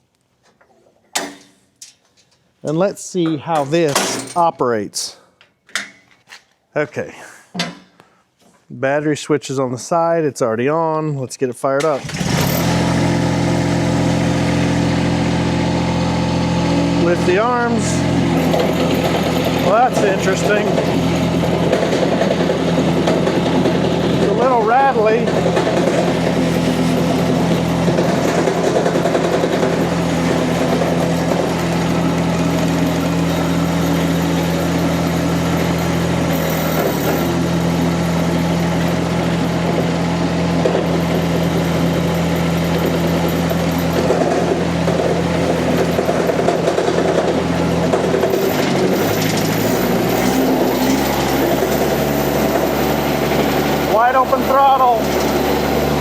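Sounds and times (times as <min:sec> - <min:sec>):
diesel engine running rattly: 0:12.0 - 0:56.0.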